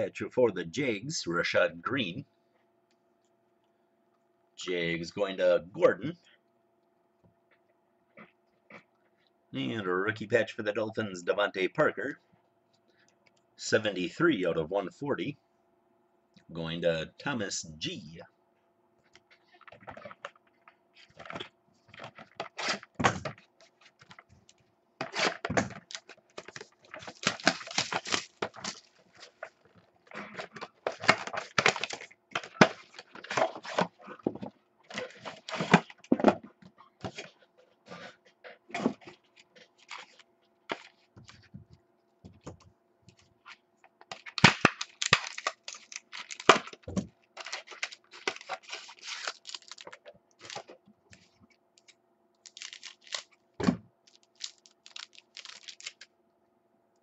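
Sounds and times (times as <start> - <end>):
faint steady hum: 0.0 - 57.0.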